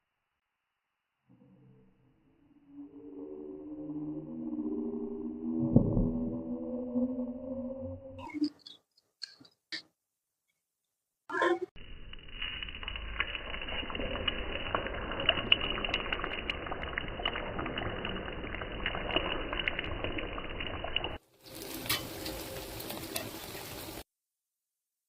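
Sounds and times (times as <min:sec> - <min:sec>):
potatoes sizzling in hot oil: 0:11.8 - 0:24.1.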